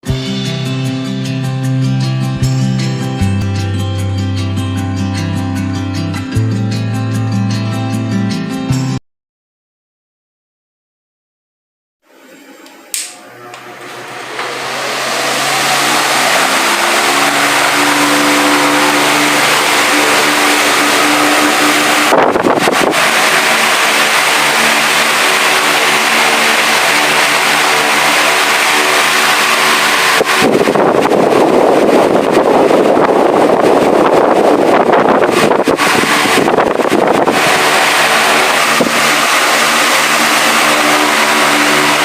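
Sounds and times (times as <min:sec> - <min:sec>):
fan motor humming: 0:12.1 - 0:42.0
fan switch click: 0:12.6 - 0:13.7.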